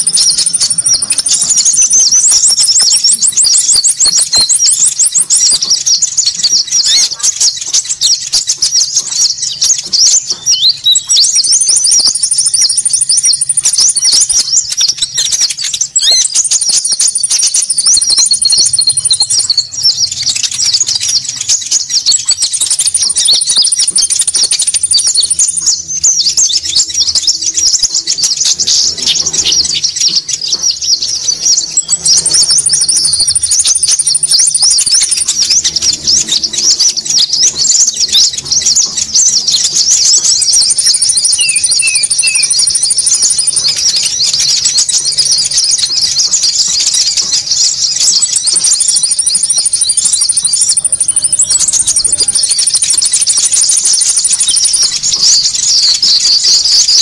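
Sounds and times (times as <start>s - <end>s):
steady high trill: 0.0s - 5.0s, 30.8s - 57.0s
birds chittering chorus: 0.0s - 57.0s.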